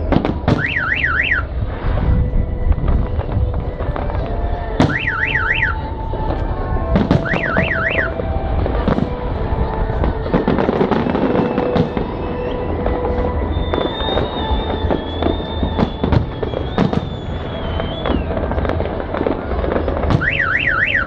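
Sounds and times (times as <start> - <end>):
steady low rumble: 0.0 - 20.8
fireworks banging and crackling: 0.0 - 21.0
car alarm siren warbling: 0.6 - 1.5, 4.8 - 9.0, 20.1 - 21.0.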